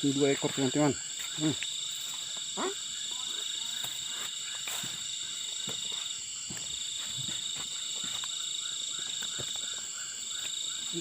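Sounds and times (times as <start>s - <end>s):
frog calling: 0.0s - 6.1s, 7.2s - 11.0s
crickets trilling: 0.0s - 11.0s.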